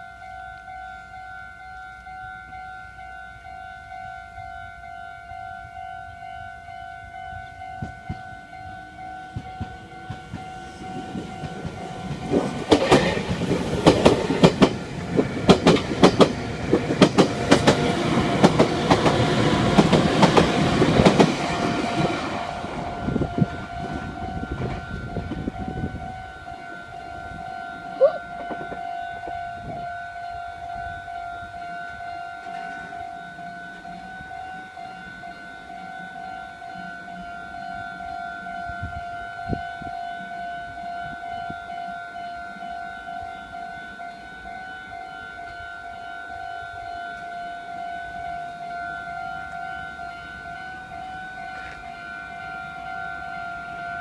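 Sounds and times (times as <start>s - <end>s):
level crossing bell clanging: 0.0s - 54.0s
train wheels clattering on rails: 7.7s - 8.3s, 9.0s - 25.8s.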